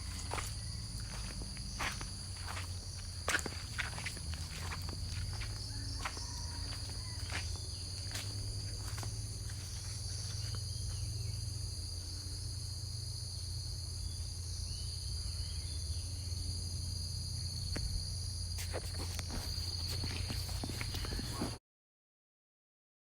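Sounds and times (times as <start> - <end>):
low hum: 0.0 - 21.5
crickets trilling: 0.0 - 21.6.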